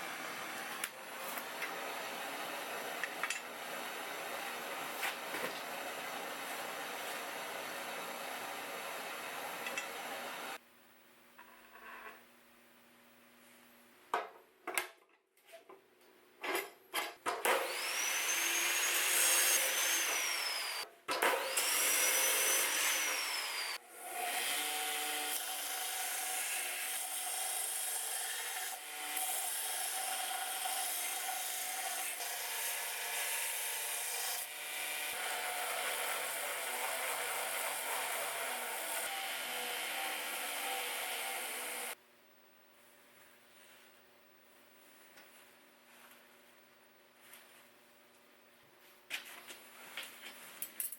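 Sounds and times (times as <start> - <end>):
power tool motor whine: 17.5 - 25.2.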